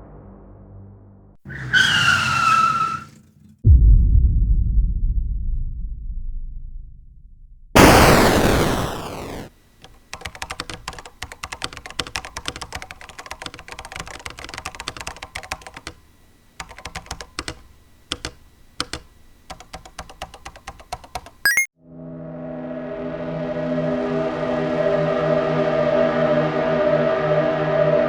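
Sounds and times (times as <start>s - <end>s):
typing on computer keyboard: 9.8s - 16.0s, 16.6s - 21.7s.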